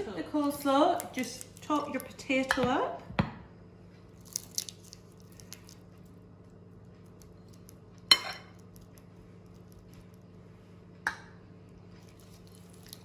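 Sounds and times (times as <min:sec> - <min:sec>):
spoon clinking against a bowl: 0:08.1 - 0:08.5.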